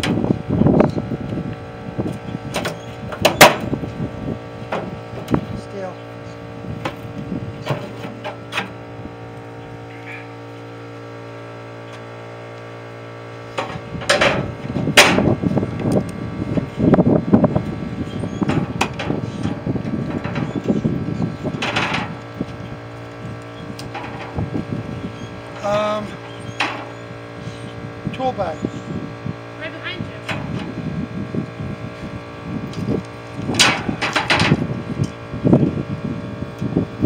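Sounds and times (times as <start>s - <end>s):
steady low hum: 0.0s - 37.0s
metal clattering and scraping: 33.5s - 34.7s.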